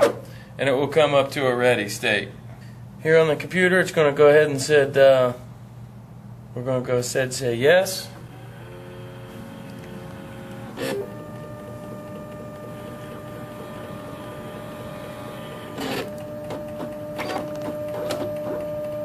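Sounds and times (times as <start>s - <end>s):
printer motor whine: 8.2s - 19.0s
quick clicks and short whirs: 8.2s - 19.0s.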